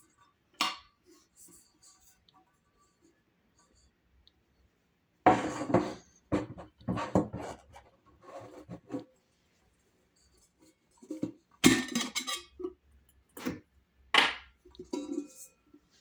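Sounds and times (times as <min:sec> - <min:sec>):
kettle parts knocking and clinking: 0:11.0 - 0:12.7, 0:14.2 - 0:15.6.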